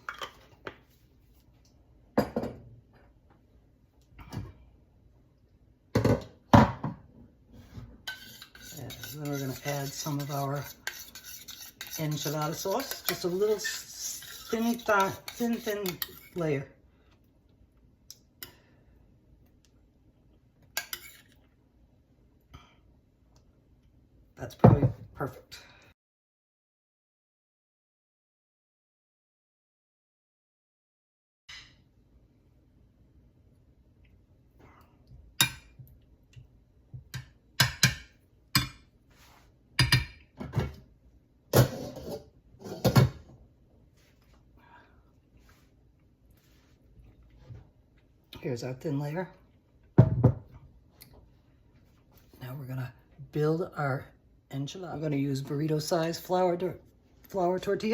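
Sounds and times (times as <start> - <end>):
dishes clinking and knocking: 2.2 - 2.6, 39.8 - 40.8, 41.5 - 43.3, 50.0 - 50.5
utensil scraping a baking dish: 7.6 - 16.7, 41.6 - 43.0.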